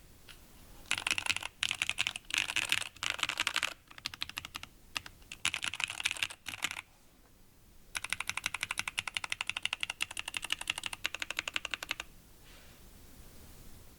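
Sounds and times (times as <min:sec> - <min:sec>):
keyboard typing: 0:00.9 - 0:06.8, 0:07.9 - 0:12.1.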